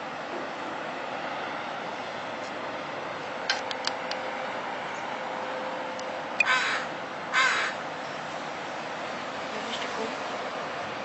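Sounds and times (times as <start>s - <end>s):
harsh bird calls: 6.4s - 8.2s.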